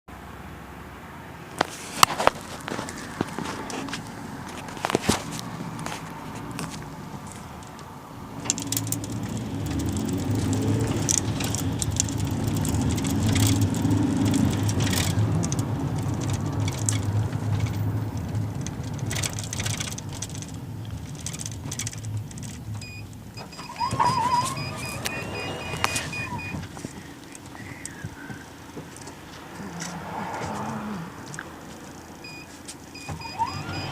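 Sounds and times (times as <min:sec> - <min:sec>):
rattles and clicks: 0:01.6 - 0:33.9
minibus engine pulling away: 0:07.9 - 0:33.9
short electronic beeps: 0:22.8 - 0:26.6, 0:32.2 - 0:33.9.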